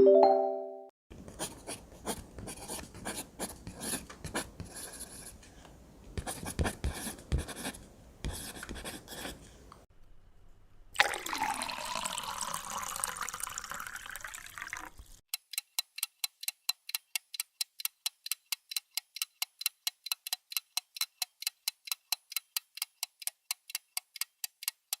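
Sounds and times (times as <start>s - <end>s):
clock ticking fast: 15.3s - 25.0s.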